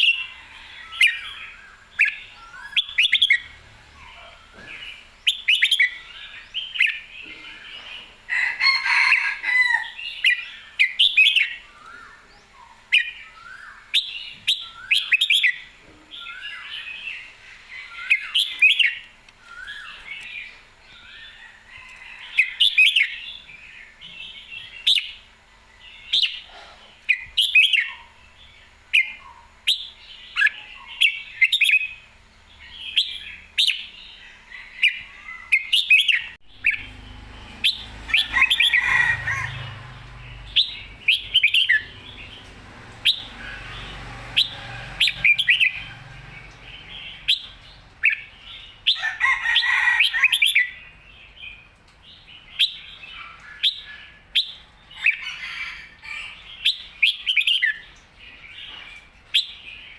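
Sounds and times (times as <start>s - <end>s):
bird singing warbling phrases: 0.0s - 8.1s, 32.6s - 49.2s, 52.3s - 59.9s.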